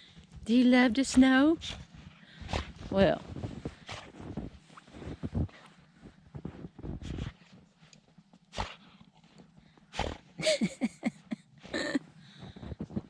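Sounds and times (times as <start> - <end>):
crunching in snow: 0.3 - 7.6.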